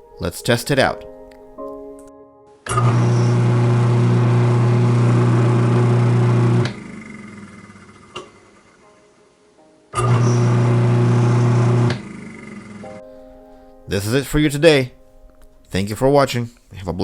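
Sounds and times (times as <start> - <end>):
garbage disposal motor humming: 2.7 - 8.8, 10.0 - 12.9.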